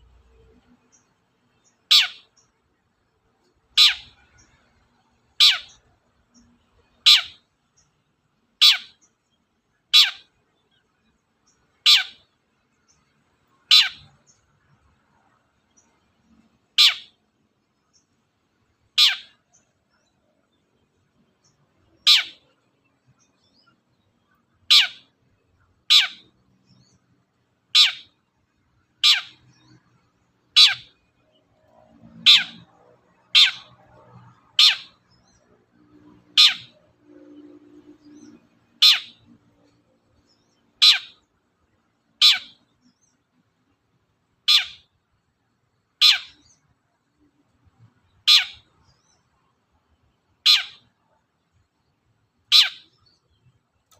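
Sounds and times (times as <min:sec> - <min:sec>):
shrike harsh calls: 0:32.0 - 0:35.0.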